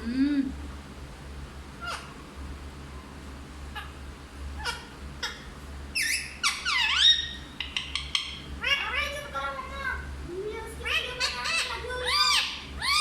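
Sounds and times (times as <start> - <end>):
parrot squeaking and calling: 1.8 - 2.2, 4.6 - 9.9, 10.8 - 13.0.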